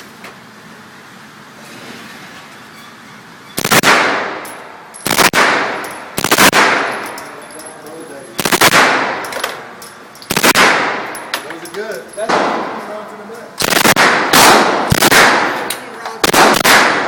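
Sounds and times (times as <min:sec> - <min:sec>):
gunshot echo: 0:03.6 - 0:04.4, 0:05.1 - 0:07.1, 0:08.4 - 0:09.3, 0:10.3 - 0:11.1, 0:13.6 - 0:17.0.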